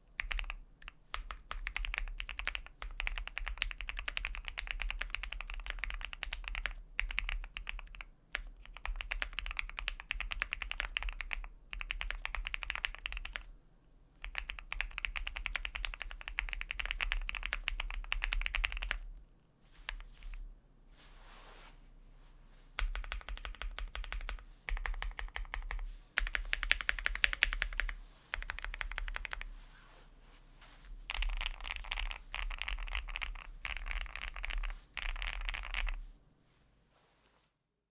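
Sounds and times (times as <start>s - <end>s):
mechanical keyboard typing: 0.2s - 13.5s, 14.2s - 19.0s, 22.8s - 29.5s, 31.1s - 36.0s.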